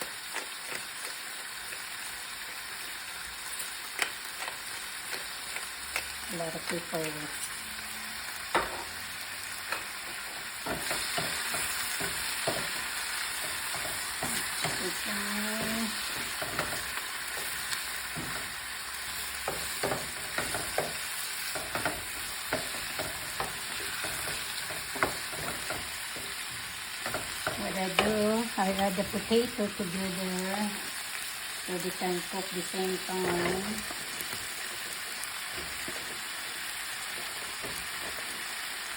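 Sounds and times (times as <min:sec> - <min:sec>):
frying sizzle: 0:00.0 - 0:38.9
utensil clicking against pan: 0:19.2 - 0:29.2.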